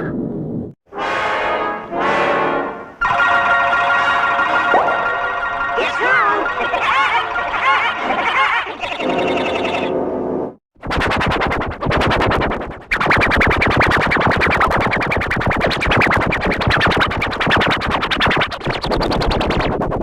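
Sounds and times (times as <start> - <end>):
pulsing gated cartoon music: 2.9 - 10.1.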